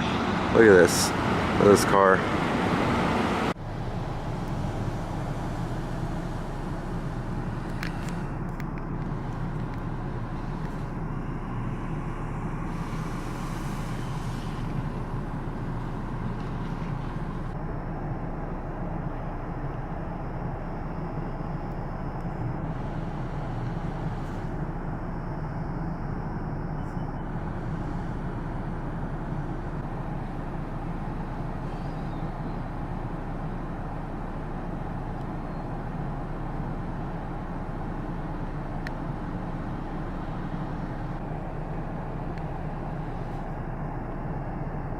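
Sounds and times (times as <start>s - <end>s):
cars driving through floodwater: 0.0s - 17.6s.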